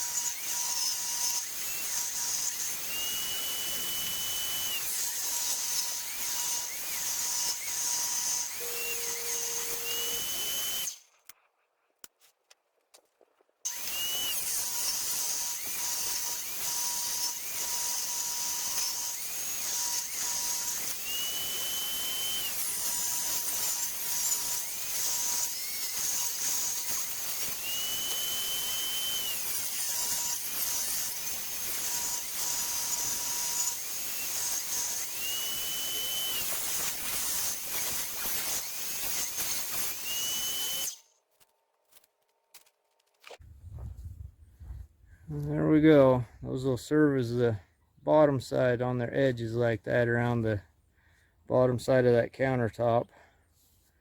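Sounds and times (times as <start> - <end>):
electric power saw cutting timber: 0.0 - 11.0, 13.7 - 41.0.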